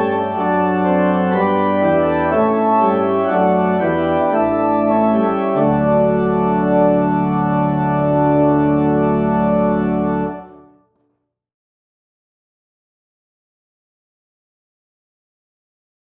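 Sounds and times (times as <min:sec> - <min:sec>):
organ chord: 0:00.0 - 0:10.8.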